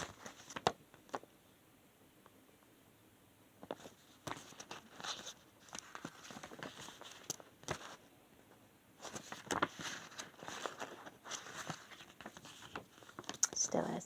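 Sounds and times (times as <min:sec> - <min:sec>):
paper pages rustling: 0:00.0 - 0:01.3, 0:03.6 - 0:13.8.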